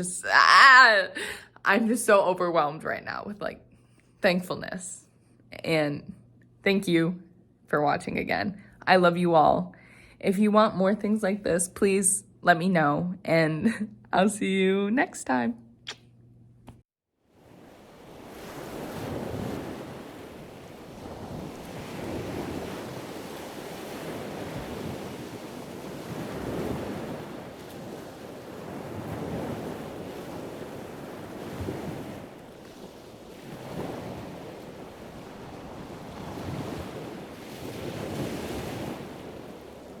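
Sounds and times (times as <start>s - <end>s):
ocean waves washing: 17.3s - 40.0s
wind buffeting microphone: 18.6s - 40.0s.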